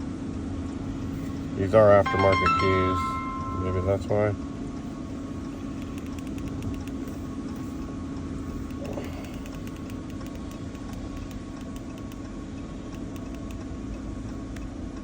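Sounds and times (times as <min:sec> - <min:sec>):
faint thin tone: 0:02.0 - 0:04.4.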